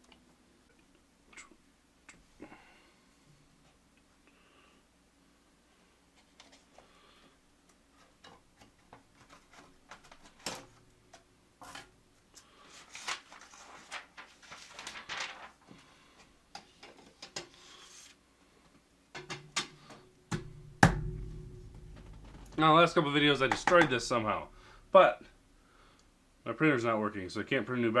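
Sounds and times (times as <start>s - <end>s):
rubbing and rustling: 7.8s - 10.8s, 11.6s - 18.2s.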